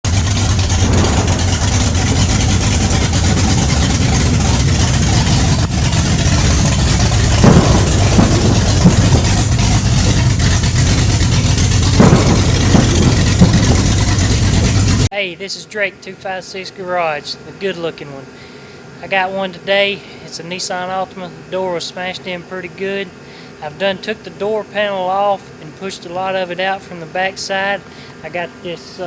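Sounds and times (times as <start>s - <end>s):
loud machine drone: 0.0s - 15.1s
short knocks: 0.2s - 15.1s.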